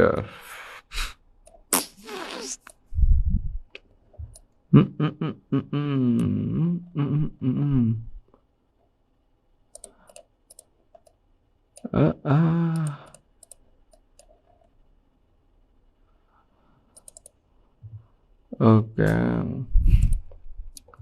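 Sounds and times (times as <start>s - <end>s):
computer mouse clicks: 9.7s - 11.9s, 12.8s - 14.8s, 16.9s - 17.4s.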